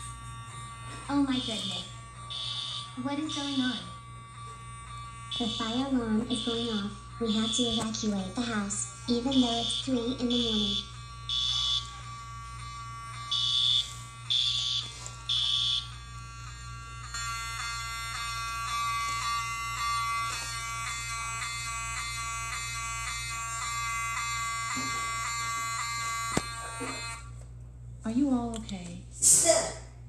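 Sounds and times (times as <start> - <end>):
pulsing buzzing alarm tone: 0.0 - 27.4
fire alarm horn buzzing blasts: 0.0 - 27.6.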